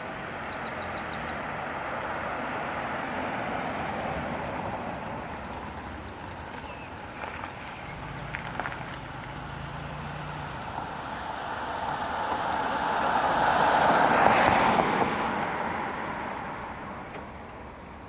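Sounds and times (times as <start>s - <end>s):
vehicle passing by: 7.2s - 17.2s.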